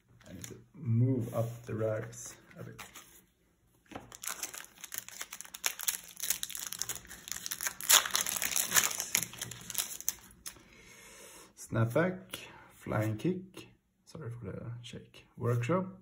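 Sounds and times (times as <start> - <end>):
foil wrapper crinkling: 3.9 - 10.6.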